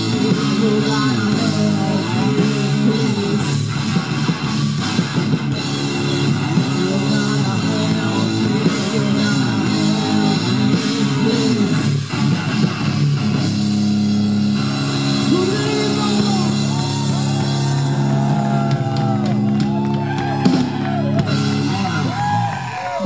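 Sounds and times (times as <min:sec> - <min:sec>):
distorted guitar chord ringing: 0:00.0 - 0:19.4
people shouting and whooping: 0:15.3 - 0:23.0.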